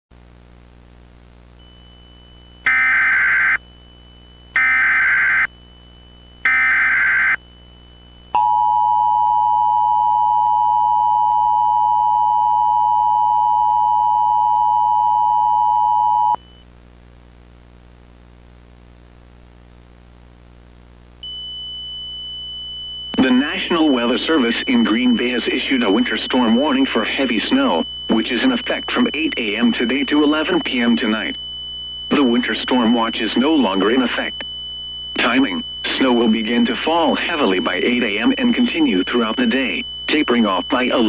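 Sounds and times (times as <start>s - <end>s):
digital data tone bursts: 2.6s - 3.6s, 4.6s - 5.5s, 6.4s - 7.4s, 23.1s - 31.4s, 32.1s - 41.0s.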